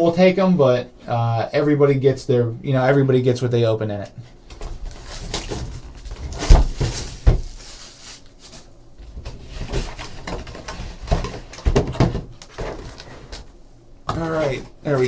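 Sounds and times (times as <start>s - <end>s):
rustling and scraping: 4.3s - 15.0s.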